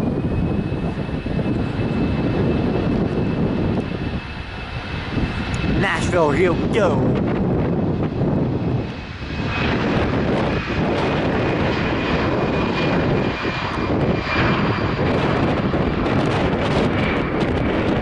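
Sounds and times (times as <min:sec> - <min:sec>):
jet engines roaring: 0:00.0 - 0:18.0.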